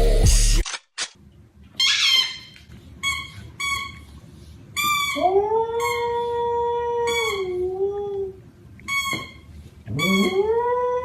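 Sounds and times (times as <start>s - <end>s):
dog yipping: 1.8s - 4.1s, 4.8s - 6.4s, 7.0s - 7.6s, 8.9s - 10.5s
dog howling: 9.9s - 11.0s.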